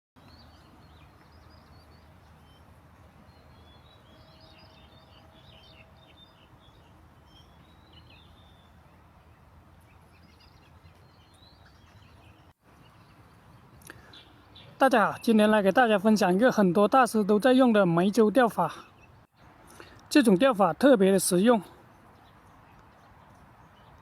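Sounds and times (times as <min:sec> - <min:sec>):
faint birds chirping: 0:00.2 - 0:24.0
low outdoor background noise: 0:00.2 - 0:24.0.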